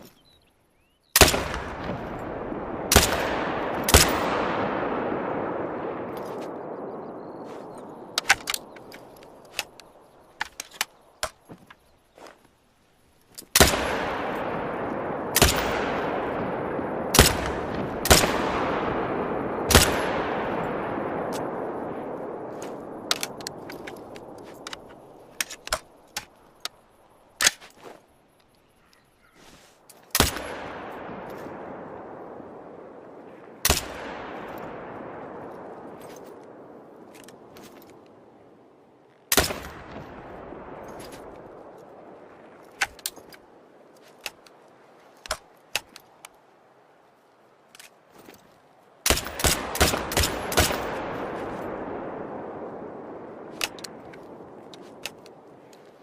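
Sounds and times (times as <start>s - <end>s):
rifle shots echoing: 1.2s - 10.0s, 13.5s - 26.1s, 30.1s - 38.0s, 39.3s - 43.6s, 49.0s - 55.6s
small sharp cracks: 7.5s - 12.4s, 22.2s - 29.0s, 39.1s - 46.4s, 53.4s - 56.0s.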